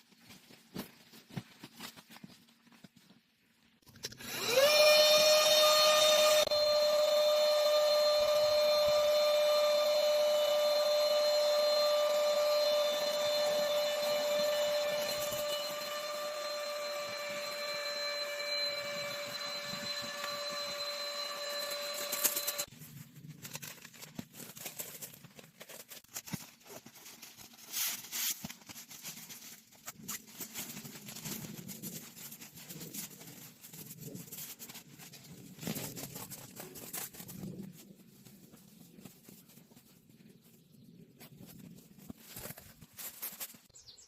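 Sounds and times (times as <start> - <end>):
small motor whining: 4.0 - 22.7.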